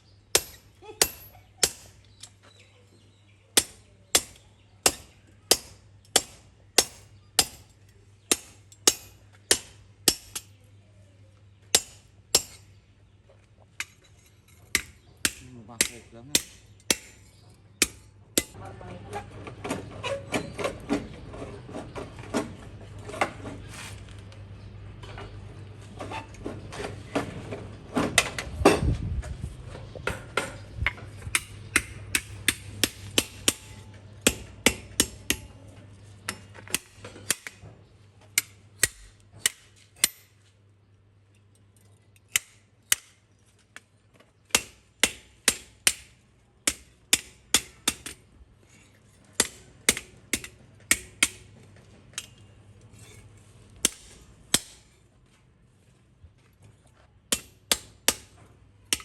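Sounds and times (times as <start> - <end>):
hammer striking steel on anvil: 0.4 - 2.0, 3.6 - 7.7, 8.3 - 10.5, 11.7 - 12.6, 14.7 - 18.6, 31.3 - 35.5, 44.5 - 48.2, 49.4 - 51.5, 53.8 - 54.9, 57.3 - 58.3.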